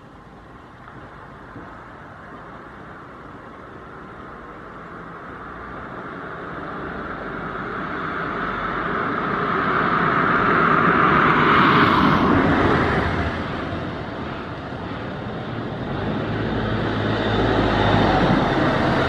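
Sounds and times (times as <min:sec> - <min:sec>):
vehicle passing by: 0:06.7 - 0:19.0.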